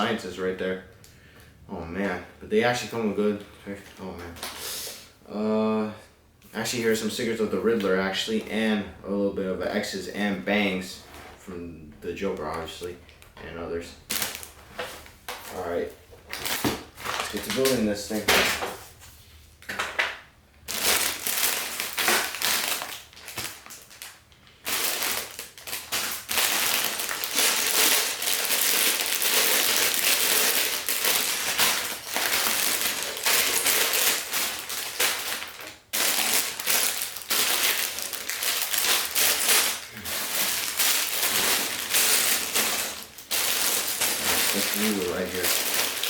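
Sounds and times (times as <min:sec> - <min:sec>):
plastic bags crinkling: 0:14.1 - 0:18.3, 0:20.6 - 0:46.0
small plastic pieces rattling: 0:20.7 - 0:46.0.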